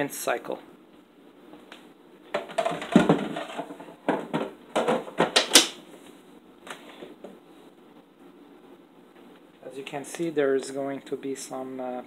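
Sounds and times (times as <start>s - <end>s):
plastic parts clattering: 2.3s - 5.7s.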